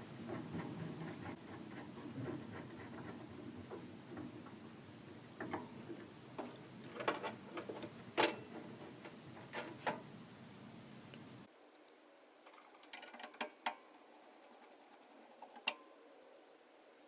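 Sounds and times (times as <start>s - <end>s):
cables and hardware clicking: 5.4s - 10.0s.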